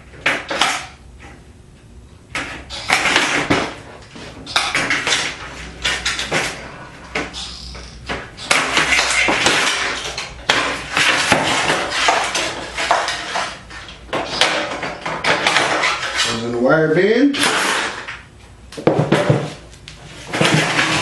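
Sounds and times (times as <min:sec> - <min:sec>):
sheet metal clattering and scraping: 0:08.4 - 0:16.4, 0:19.0 - 0:21.0.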